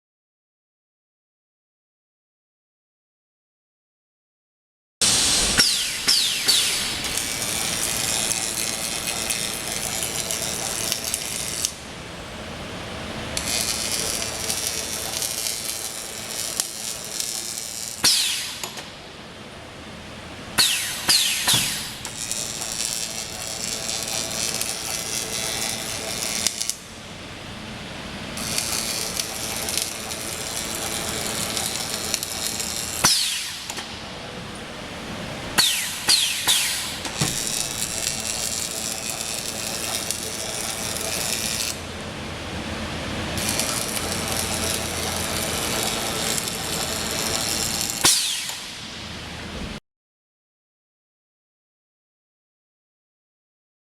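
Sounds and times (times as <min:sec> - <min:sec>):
short falling whines: 0:05.0 - 0:09.0
laser welding machine buzzing hiss: 0:05.0 - 0:19.6, 0:20.5 - 0:27.4, 0:28.1 - 0:49.3.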